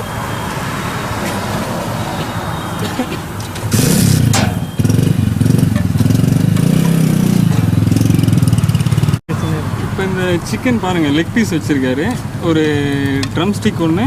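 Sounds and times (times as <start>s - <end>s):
road traffic noise: 0.0s - 14.0s
motorcycle engine running: 3.7s - 10.4s.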